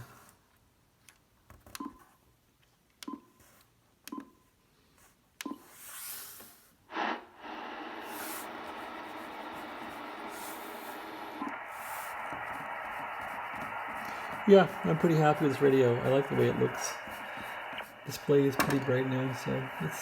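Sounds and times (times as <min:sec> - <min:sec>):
radio static hiss: 0:06.9 - 0:20.0.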